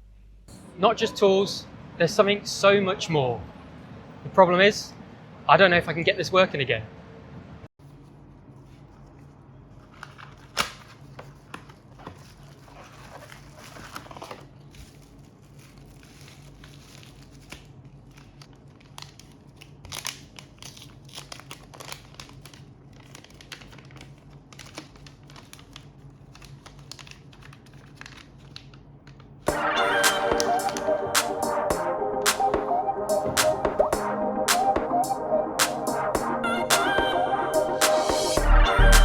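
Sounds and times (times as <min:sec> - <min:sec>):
thin plastic crinkling and tearing: 0:08.6 - 0:29.5.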